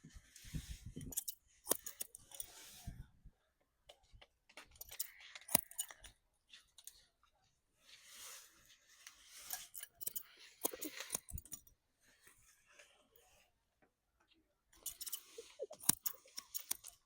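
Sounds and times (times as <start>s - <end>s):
scissors snipping hair: 9.9s - 11.6s, 14.8s - 16.9s.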